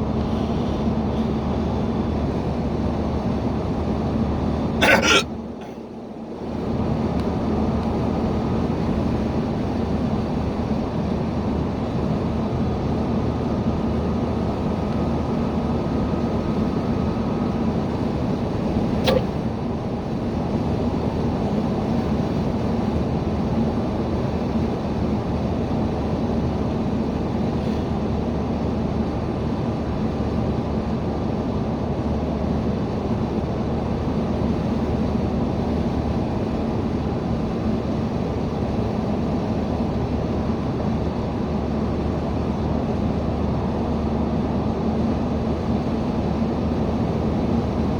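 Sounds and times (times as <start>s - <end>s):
car road and engine noise: 0.0s - 47.9s
person hiccuping: 4.8s - 5.8s, 19.1s - 19.3s.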